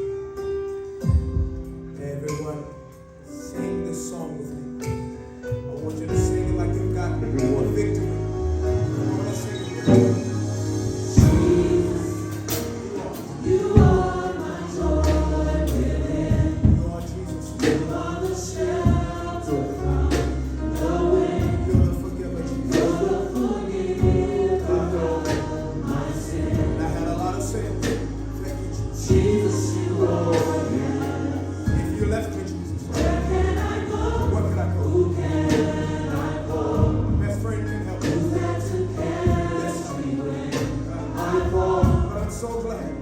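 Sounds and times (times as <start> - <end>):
drum hits: 1.0 - 2.0, 11.2 - 19.4, 20.1 - 22.1, 24.0 - 24.4, 38.0 - 39.8, 40.5 - 42.4
gospel choir singing: 5.7 - 43.0
low bass notes: 5.8 - 43.0.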